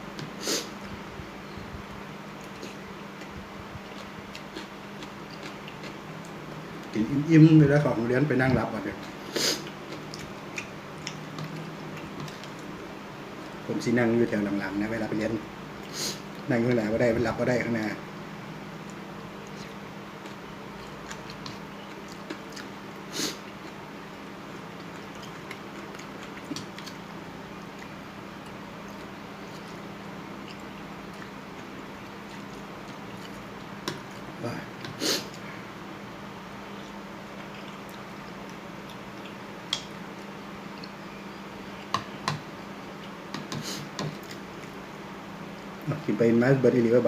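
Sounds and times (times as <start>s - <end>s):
steady low hum: 0.0s - 47.0s
person chewing: 2.4s - 7.0s, 9.0s - 12.8s, 18.8s - 23.9s, 24.5s - 35.5s, 36.7s - 44.8s.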